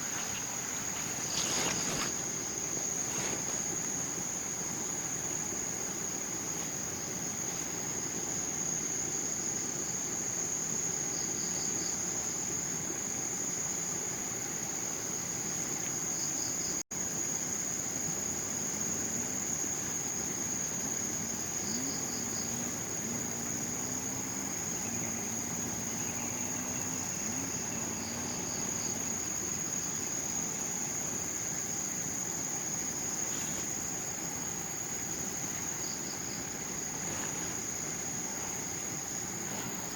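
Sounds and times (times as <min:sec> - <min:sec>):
high-pitched insect drone: 0:18.4 - 0:39.9.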